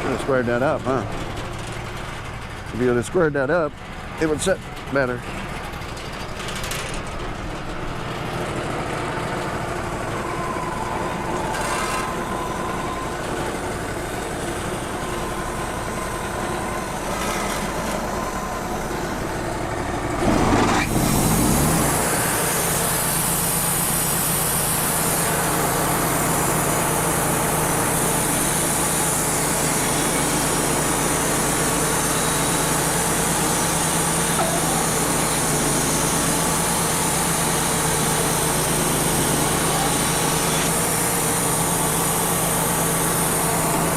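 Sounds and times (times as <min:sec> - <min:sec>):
sawmill engine running: 0:00.0 - 0:43.9
band saw high hiss: 0:20.8 - 0:43.9.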